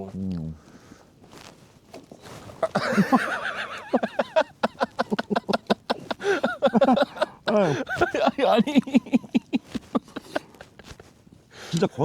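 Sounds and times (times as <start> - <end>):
hearty laughter: 2.6 - 11.1.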